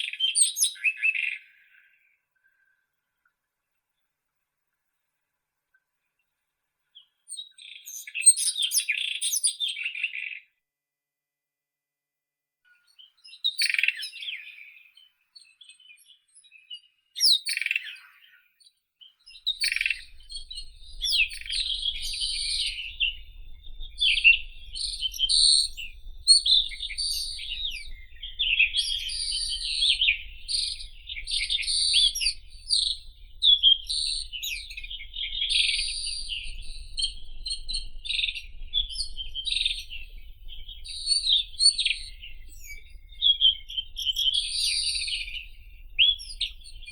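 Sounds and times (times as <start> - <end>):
robin singing fast warbling: 19.3 - 46.9.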